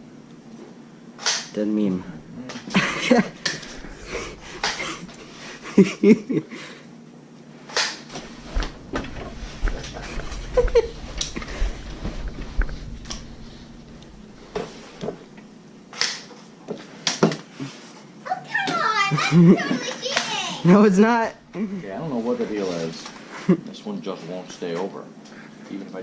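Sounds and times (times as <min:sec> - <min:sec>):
low thumps: 0:08.2 - 0:15.4.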